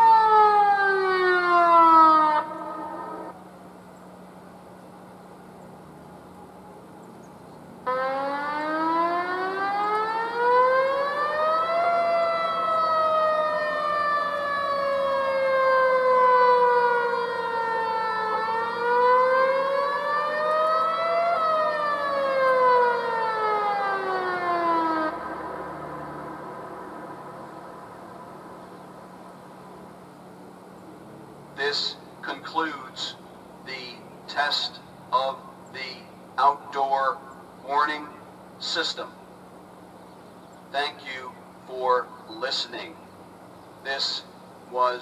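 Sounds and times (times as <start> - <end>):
warning siren wailing: 0.0 - 3.4, 5.8 - 7.1, 7.8 - 30.0.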